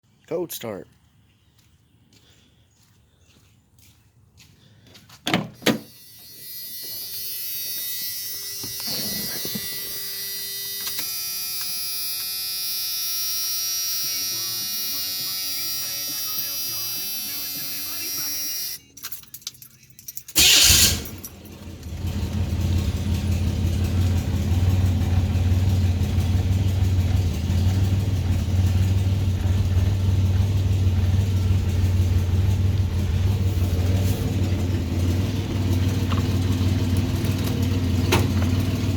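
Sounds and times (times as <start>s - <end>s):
engine cranking: 20.2s - 38.9s
car engine idling: 20.4s - 38.9s.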